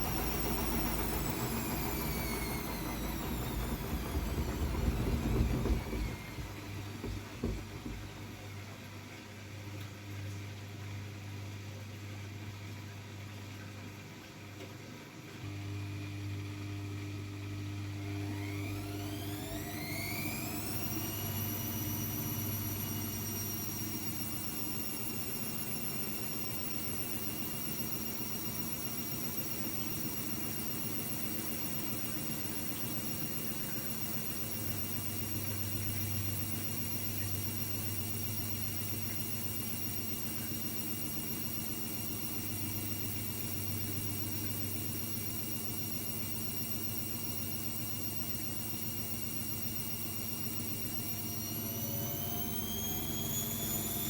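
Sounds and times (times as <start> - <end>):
low drum hum: 0.0 - 8.5
washing machine motor whine: 0.0 - 54.0.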